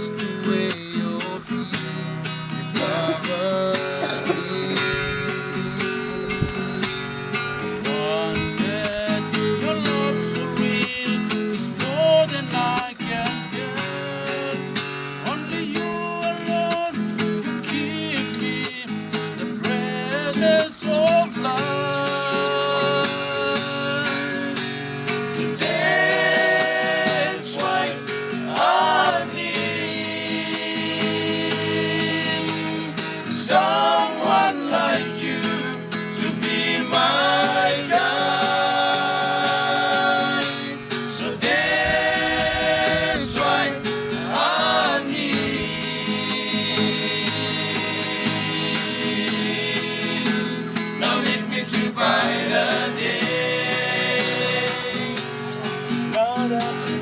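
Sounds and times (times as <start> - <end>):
acoustic guitar: 0.0 - 57.0
person singing: 2.8 - 6.8, 25.4 - 55.2.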